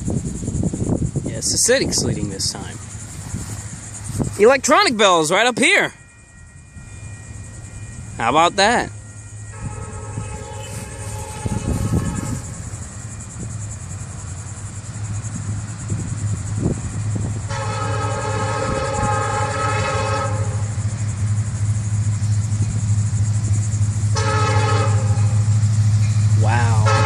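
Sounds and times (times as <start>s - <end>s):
train rumble: 0.0s - 27.0s
locomotive horn blast: 5.4s - 13.6s, 17.4s - 20.8s, 24.1s - 25.6s, 26.7s - 27.0s.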